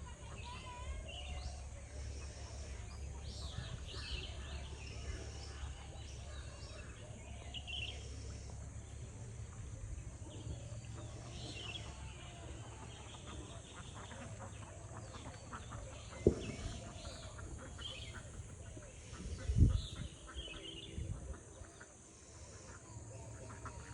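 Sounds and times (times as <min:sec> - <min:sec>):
low wind rumble: 0:16.2 - 0:21.6.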